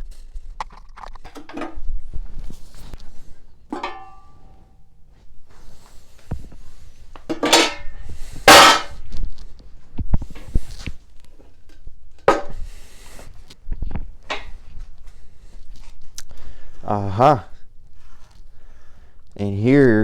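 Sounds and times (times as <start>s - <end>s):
metal parts clanking: 7.3s - 7.9s, 8.5s - 8.9s
metal scraping: 7.4s - 9.0s.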